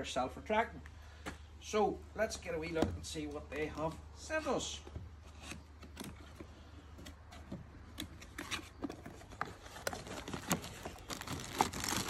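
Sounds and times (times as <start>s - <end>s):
package being opened by hand: 8.0s - 12.0s
packaging rustling: 8.0s - 12.0s.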